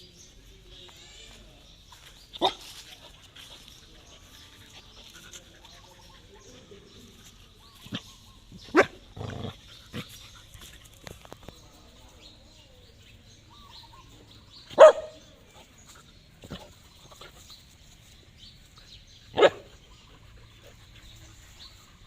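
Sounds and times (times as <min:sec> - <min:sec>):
dog barking: 0:08.7 - 0:09.0, 0:14.7 - 0:15.2, 0:19.3 - 0:19.7.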